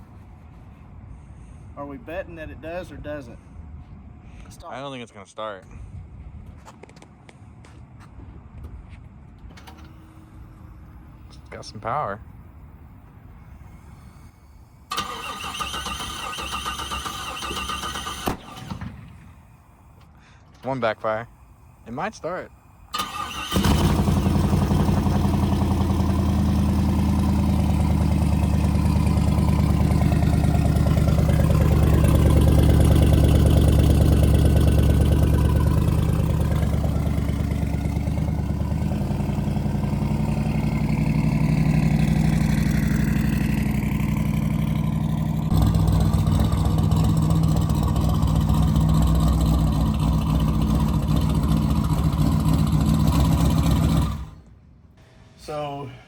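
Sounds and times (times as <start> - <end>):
car engine running: 23.2 - 54.5.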